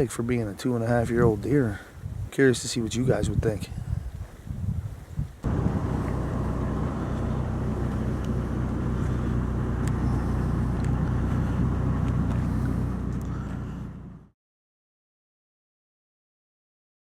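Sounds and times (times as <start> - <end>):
road rumble: 5.4 - 14.3
vehicle engine hum: 5.4 - 14.4.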